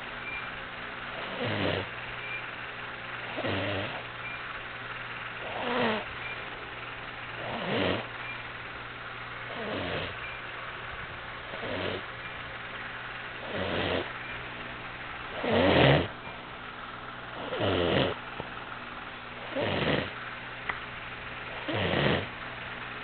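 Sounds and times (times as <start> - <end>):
ox snoring: 1.2 - 1.9, 3.3 - 4.0, 5.4 - 6.1, 7.4 - 8.1, 9.5 - 10.2, 11.5 - 12.1, 13.4 - 14.2, 15.4 - 16.2, 17.4 - 18.2, 19.4 - 20.2, 21.5 - 22.3.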